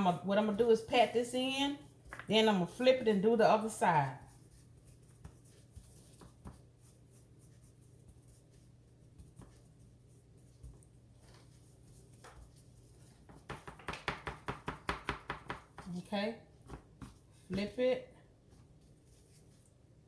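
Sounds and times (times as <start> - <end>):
gloved hand patting meat: 8.0 - 16.0.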